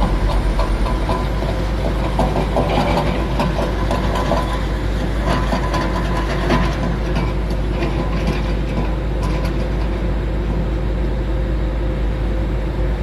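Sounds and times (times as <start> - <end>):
metallic clanks and rattles: 0.0 - 9.6
excavator diesel engine running: 0.0 - 13.0.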